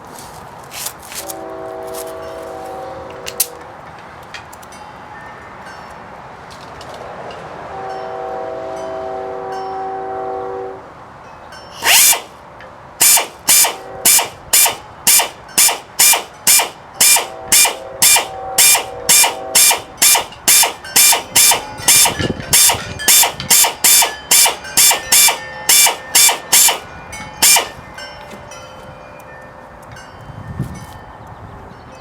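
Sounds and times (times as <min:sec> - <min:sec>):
ratchet wrench clicking: 0:11.8 - 0:12.4, 0:13.0 - 0:27.8.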